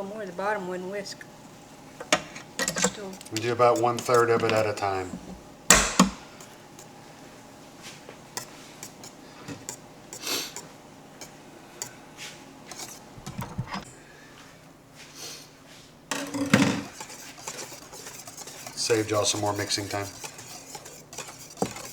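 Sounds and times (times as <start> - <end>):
whisk scraping a mixing bowl: 2.1 - 7.1, 7.8 - 13.9, 16.6 - 21.9
sharp knocks: 5.7 - 6.2.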